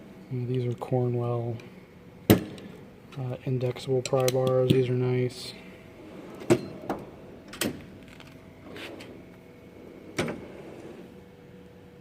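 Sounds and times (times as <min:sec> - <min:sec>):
drawers sliding and rattling: 0:06.0 - 0:11.1.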